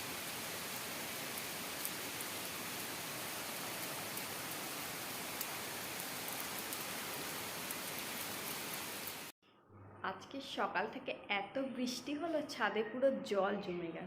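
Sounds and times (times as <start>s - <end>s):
heavy rain falling: 0.0s - 9.3s.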